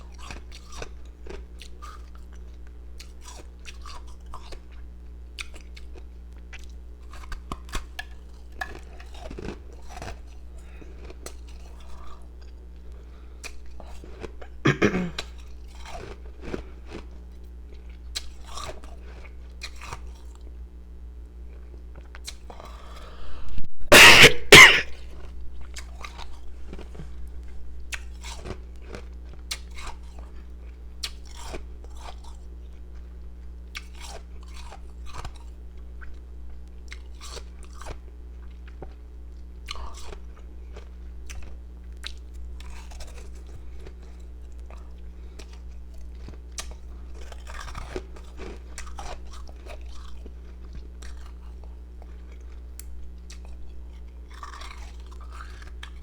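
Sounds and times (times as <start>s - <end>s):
rough noise burst: 23.2s - 24.9s
ice crunching in mouth: 46.2s - 56.0s.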